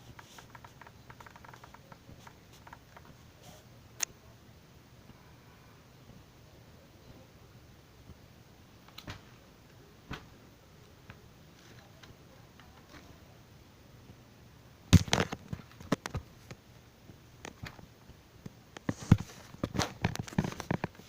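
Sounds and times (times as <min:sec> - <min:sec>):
sharp clicks and knocks: 0:00.0 - 0:03.2.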